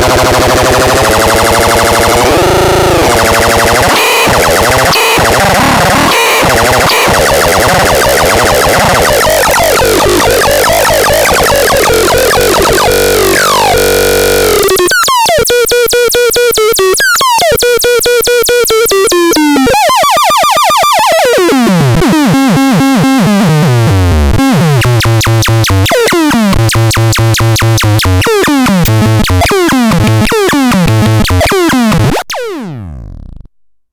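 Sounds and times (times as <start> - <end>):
buzzy synthesized electronic tones: 0.0 - 14.9, 24.7 - 33.3
descending stepped notes: 0.0 - 15.0, 21.1 - 33.5.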